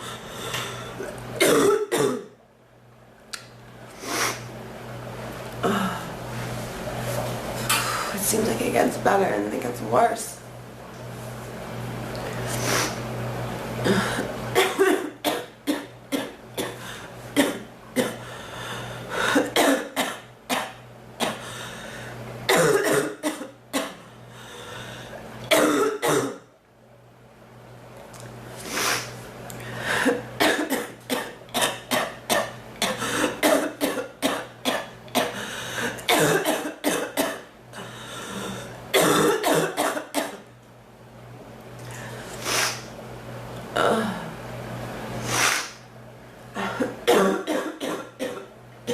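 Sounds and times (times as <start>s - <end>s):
woman coughing: 1.4s - 2.3s, 13.8s - 16.8s, 17.4s - 18.2s, 19.3s - 21.4s, 22.5s - 24.0s, 25.5s - 26.4s, 30.0s - 35.4s, 36.1s - 37.5s, 38.9s - 40.4s, 46.6s - 48.9s.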